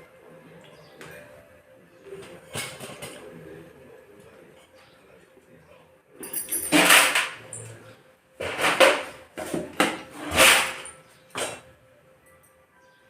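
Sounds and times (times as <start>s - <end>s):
kitchen utensils clattering: 2.2s - 3.3s, 6.2s - 7.8s, 8.4s - 11.7s.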